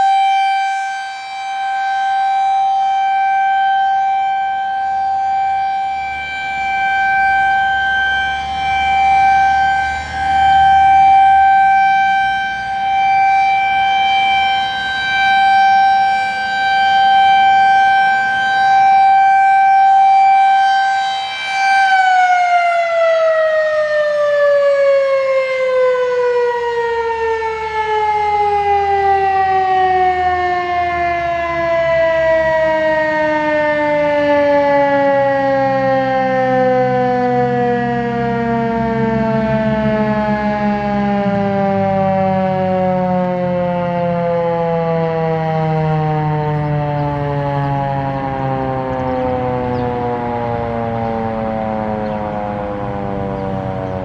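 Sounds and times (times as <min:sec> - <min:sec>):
high-pitched warning siren: 0:00.0 - 0:54.0.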